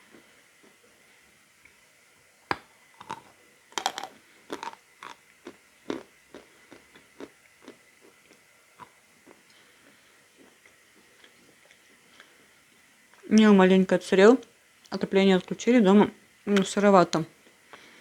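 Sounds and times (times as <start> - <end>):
chewing crunches: 3.0 - 9.5.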